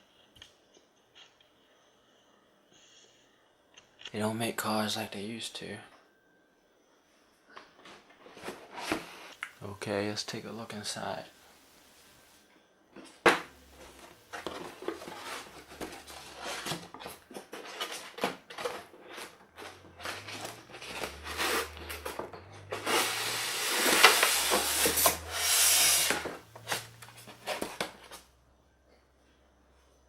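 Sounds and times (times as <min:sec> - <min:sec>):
cardboard box rustling: 0:13.7 - 0:28.2
styrofoam packing rubbing and scraping: 0:13.7 - 0:28.2.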